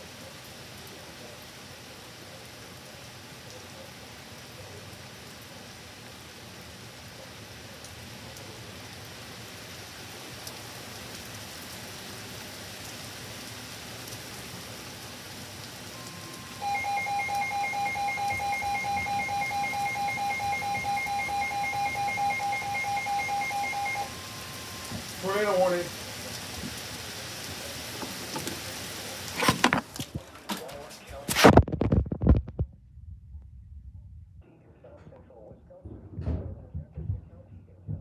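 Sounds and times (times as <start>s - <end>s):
rain hiss: 0.0s - 31.3s
emergency alert tone: 15.9s - 26.1s
rapidly pulsing alert beeps: 16.0s - 25.6s.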